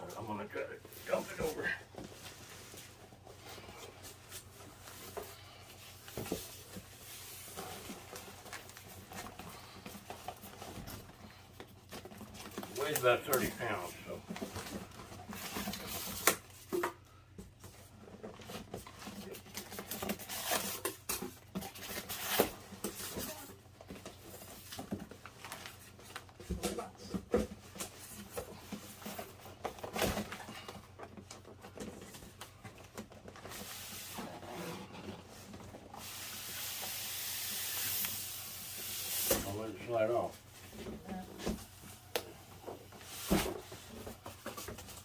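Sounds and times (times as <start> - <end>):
cardboard box rustling and scraping: 33.3 - 36.2.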